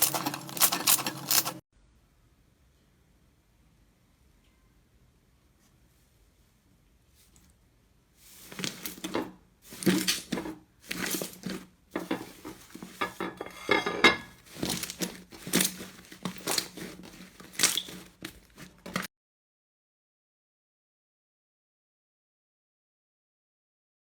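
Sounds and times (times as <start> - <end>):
slime squishing and crackling: 0.0 - 1.6, 14.4 - 19.1.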